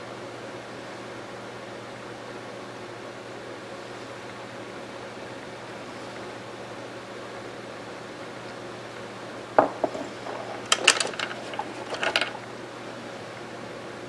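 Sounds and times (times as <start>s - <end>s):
rifle parts clicking: 9.6s - 12.5s.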